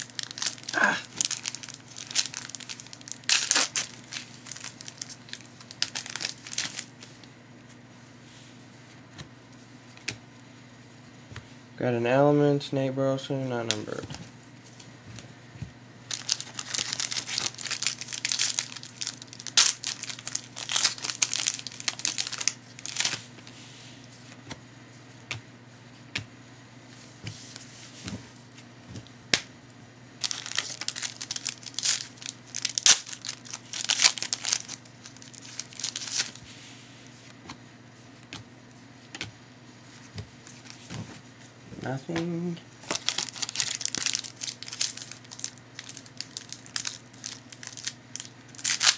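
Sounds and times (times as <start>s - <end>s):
foil wrappers tearing and crinkling: 0.0s - 7.0s, 16.1s - 23.2s, 30.2s - 36.4s, 42.8s - 48.9s
steady low hum: 0.0s - 48.9s.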